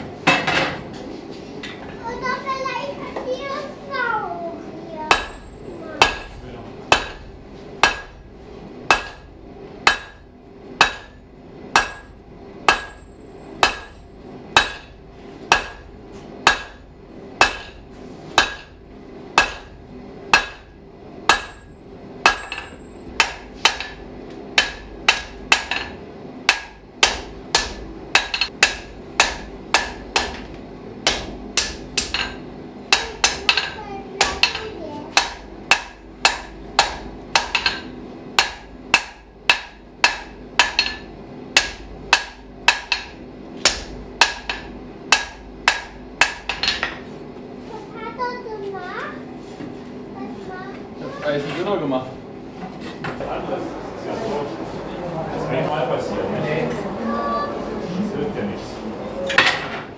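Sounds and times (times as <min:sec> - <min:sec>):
hammer striking iron on anvil: 0:05.1 - 0:08.3, 0:08.9 - 0:18.8, 0:19.4 - 0:47.0.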